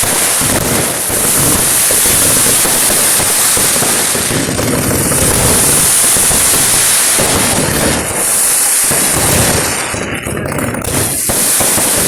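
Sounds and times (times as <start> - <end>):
firecrackers bursting: 0.0 - 12.0.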